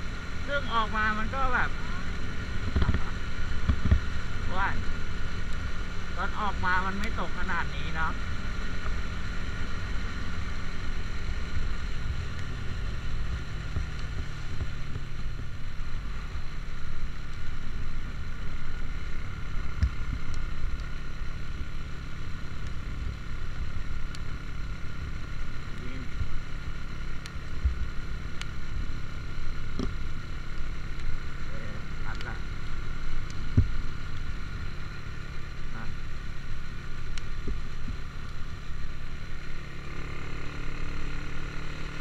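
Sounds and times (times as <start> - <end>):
road and engine rumble: 0.0 - 42.0
faint ticks: 26.9 - 28.6, 37.0 - 38.4.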